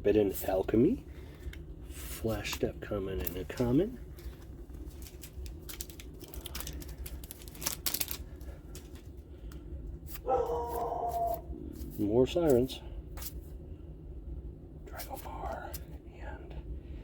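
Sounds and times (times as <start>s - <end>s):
foil wrappers and cards crinkling: 0.5s - 13.4s.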